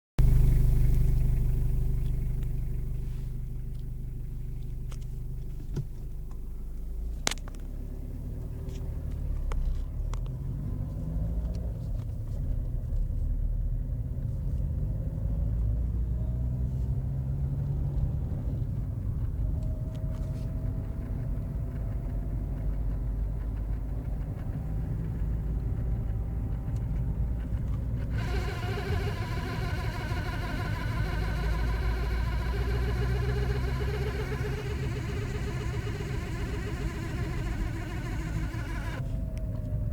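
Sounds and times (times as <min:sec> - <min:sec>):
car engine rumbling: 0:00.1 - 0:39.9
faint rising whine: 0:00.2 - 0:07.3, 0:28.1 - 0:39.2.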